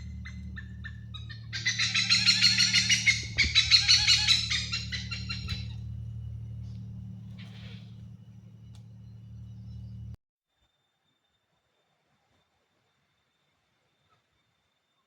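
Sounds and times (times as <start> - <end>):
bird chattering: 0.0 - 8.4
steady low hum: 0.0 - 10.2.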